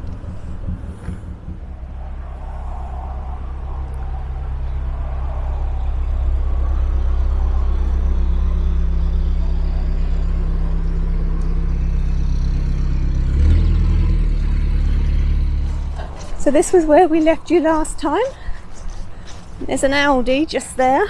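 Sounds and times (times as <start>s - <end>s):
boat diesel engine throbbing: 0.0s - 21.0s.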